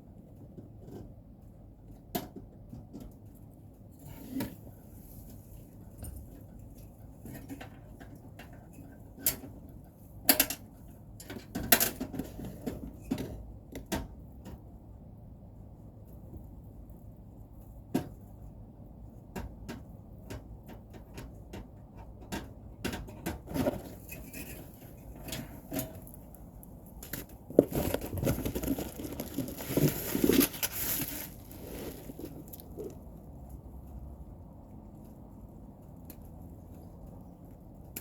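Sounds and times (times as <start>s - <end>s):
rustling and scraping: 23.4s - 33.6s.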